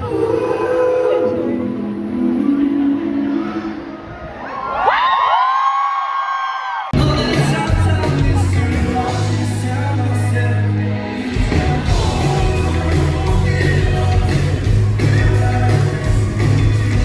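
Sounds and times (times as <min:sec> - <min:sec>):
drums: 0:06.9 - 0:17.0
heavy bass line: 0:07.0 - 0:17.0
live pop-rock band: 0:07.0 - 0:17.0.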